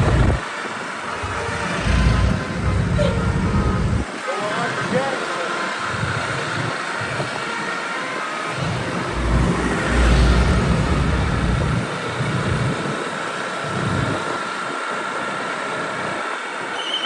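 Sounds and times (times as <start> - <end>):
large vehicle passing: 0.0 - 4.1, 8.5 - 12.9
road traffic: 0.0 - 17.0.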